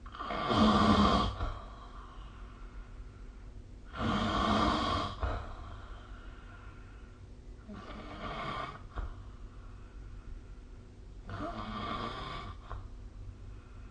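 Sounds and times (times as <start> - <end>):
person snoring: 0.0 - 2.0, 3.9 - 5.8, 7.6 - 9.1, 11.2 - 12.8
quiet breathing: 0.0 - 13.9.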